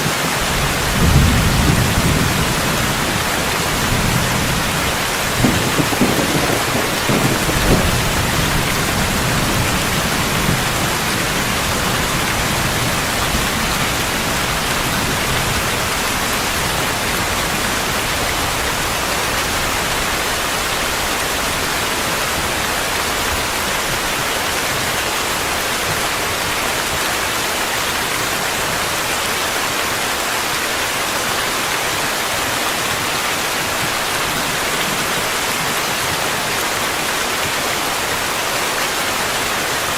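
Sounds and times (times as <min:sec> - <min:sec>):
steady rain: 0:00.0 - 0:39.9
low thunder rumble: 0:00.5 - 0:20.2.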